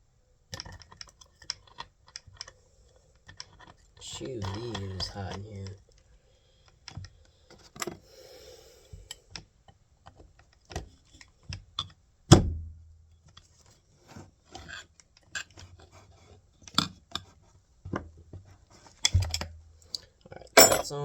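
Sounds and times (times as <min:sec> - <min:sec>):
metal tools clicking and knocking: 0:19.0 - 0:21.0.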